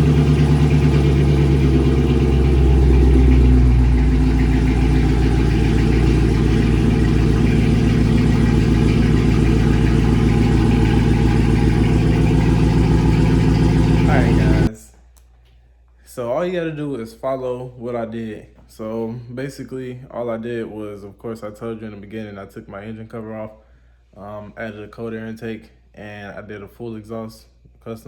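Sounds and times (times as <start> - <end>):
car engine idling: 0.0 - 14.7.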